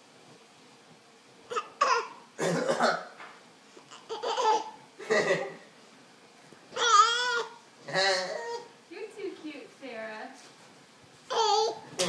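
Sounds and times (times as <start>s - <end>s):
baby laughing and babbling: 1.5s - 2.2s, 3.8s - 5.6s, 6.8s - 8.8s, 11.3s - 12.0s.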